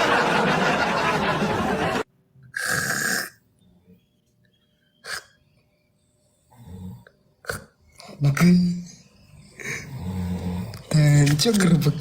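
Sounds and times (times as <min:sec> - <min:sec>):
person snoring: 0:09.5 - 0:10.9.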